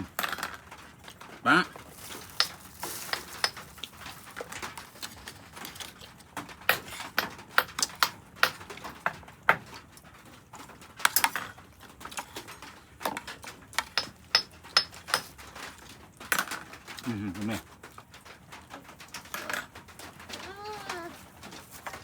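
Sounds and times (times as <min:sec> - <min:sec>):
utensils clinking against dishes: 0:01.8 - 0:06.1, 0:11.1 - 0:17.1.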